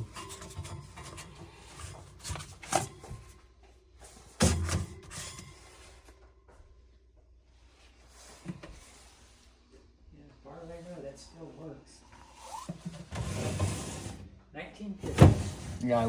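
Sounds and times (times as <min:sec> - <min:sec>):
refrigerator door shutting thunk: 0:15.0 - 0:15.7.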